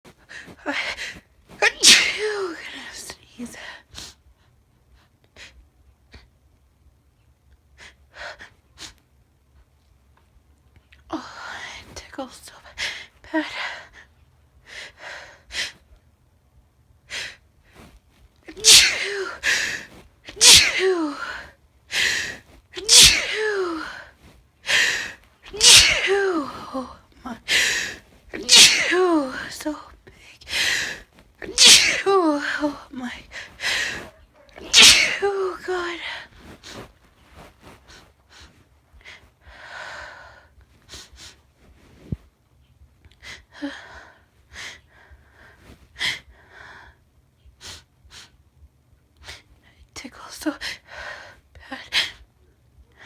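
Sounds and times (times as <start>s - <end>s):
woman sneezing: 1.5s - 3.2s, 18.5s - 21.5s, 22.2s - 29.8s, 30.5s - 37.8s
short quiet breaths: 17.1s - 31.6s, 32.4s - 34.8s.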